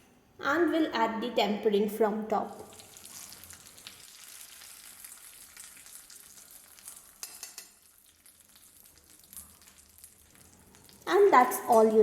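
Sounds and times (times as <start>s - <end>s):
hot oil sizzling: 2.7s - 12.0s.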